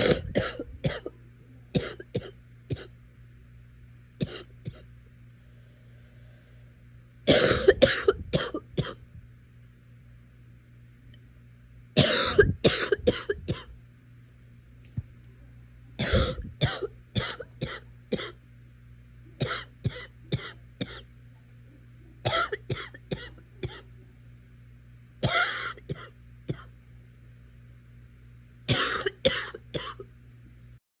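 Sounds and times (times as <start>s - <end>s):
girl coughing: 0.0s - 1.1s, 1.8s - 2.9s, 4.2s - 4.9s, 7.3s - 9.0s, 12.0s - 13.7s, 16.0s - 18.4s, 19.4s - 21.1s, 22.2s - 23.8s, 25.2s - 26.7s, 28.7s - 30.0s
faint steady hum: 0.0s - 30.8s.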